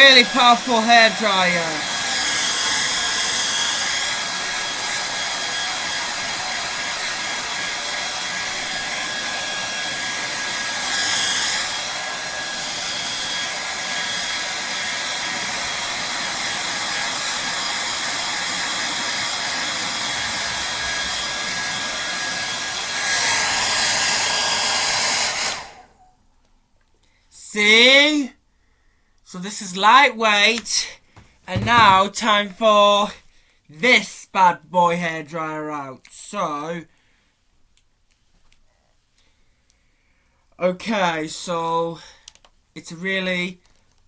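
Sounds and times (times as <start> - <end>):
hair dryer blowing air: 0.0 - 26.0, 31.5 - 32.2.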